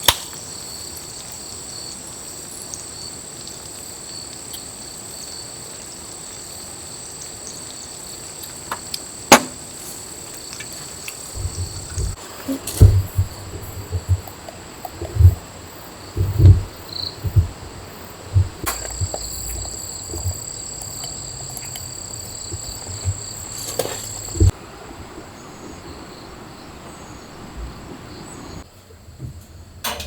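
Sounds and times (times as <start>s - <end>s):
insects trilling: 0.0s - 28.7s
low thumps: 11.3s - 24.6s.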